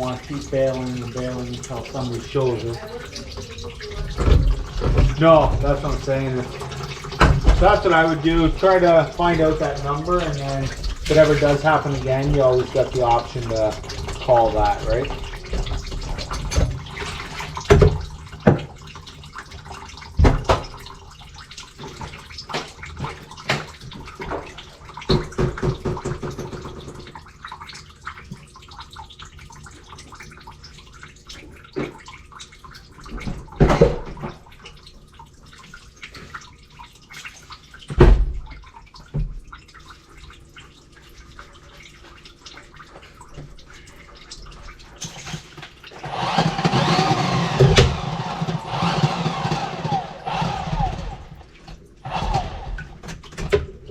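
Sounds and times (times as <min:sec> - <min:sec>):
pipes and tools clanking: 0:00.0 - 0:18.7, 0:42.9 - 0:53.9
water sloshing in sink: 0:00.0 - 0:53.9
loud thumps: 0:46.0 - 0:51.4.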